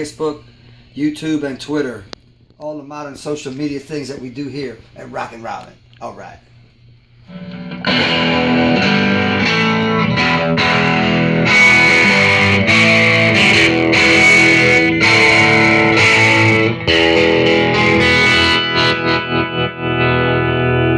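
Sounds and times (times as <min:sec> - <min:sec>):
electric guitar chords: 0:07.2 - 0:20.9.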